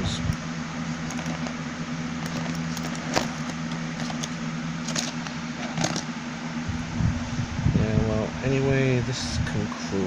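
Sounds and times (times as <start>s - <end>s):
low machine hum: 0.0s - 10.0s
screwdriver bits rattling: 1.0s - 1.6s, 2.2s - 6.0s.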